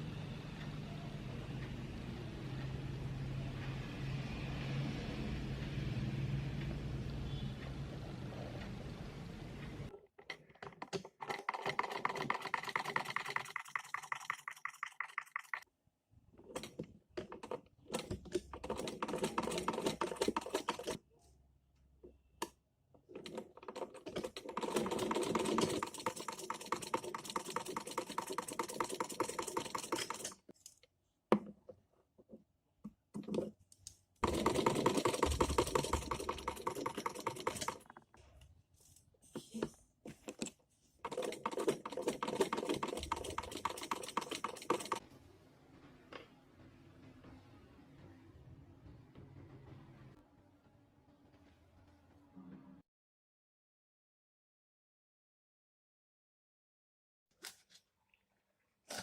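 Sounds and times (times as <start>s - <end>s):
rapid even clicking: 34.2s - 38.0s, 41.0s - 45.0s.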